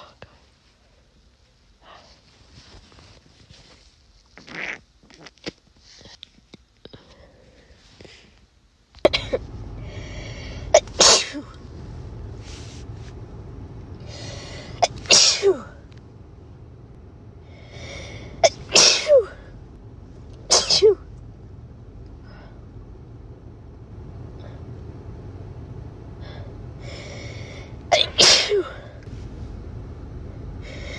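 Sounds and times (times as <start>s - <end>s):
person sneezing: 10.4s - 11.5s, 14.1s - 15.8s, 18.0s - 19.4s, 20.5s - 21.0s, 27.9s - 29.0s
hitching in-breath: 17.4s - 18.4s.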